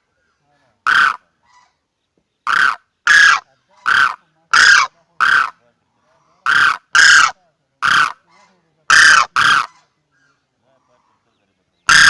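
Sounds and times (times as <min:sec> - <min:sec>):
crane call lure trumpeting: 0:06.5 - 0:08.1, 0:08.9 - 0:09.7.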